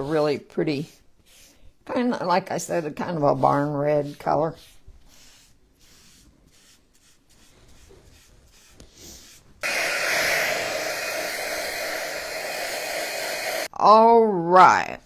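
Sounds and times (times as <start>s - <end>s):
faint brushing strokes: 0.0s - 13.7s
electric dryer blowing: 9.6s - 13.7s.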